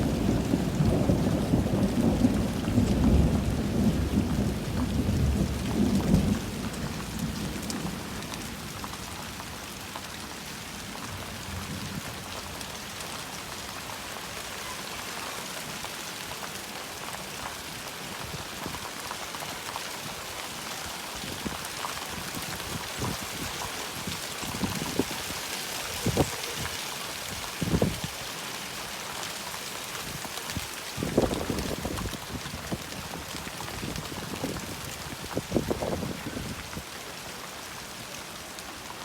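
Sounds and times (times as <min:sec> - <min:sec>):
low rumble of thunder: 0:00.0 - 0:08.9
heavy rain: 0:00.0 - 0:39.0
raindrops tapping surfaces: 0:00.0 - 0:39.0.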